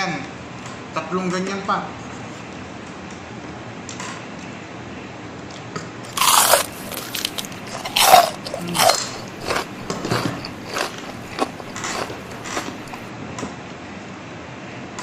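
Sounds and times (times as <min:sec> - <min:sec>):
crunching bites of fried chicken: 0:06.1 - 0:13.1.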